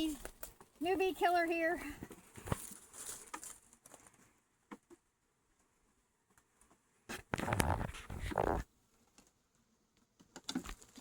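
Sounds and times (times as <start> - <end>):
comb rustling and crackling: 1.5 - 4.3.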